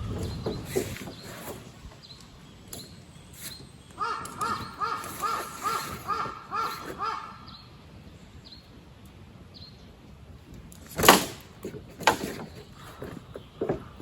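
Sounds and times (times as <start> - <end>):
faint high bird chirps: 0.0 - 8.8.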